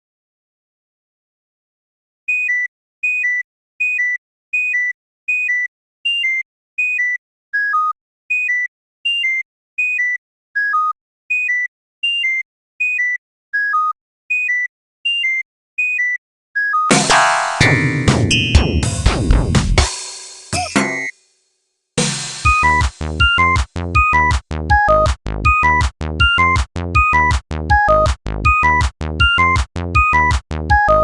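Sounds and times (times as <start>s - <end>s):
two-note electronic blip: 16.9s - 18.9s.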